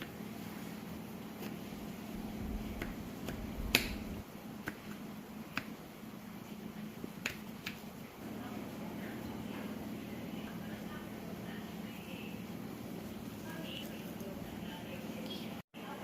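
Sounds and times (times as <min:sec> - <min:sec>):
sharp clicks and taps: 0:02.8 - 0:04.0.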